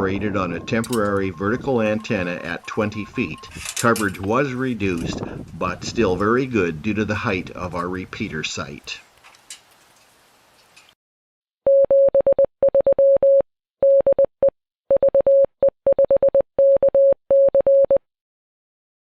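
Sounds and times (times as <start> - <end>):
morse code beeps: 0.5 - 3.6, 11.7 - 18.0.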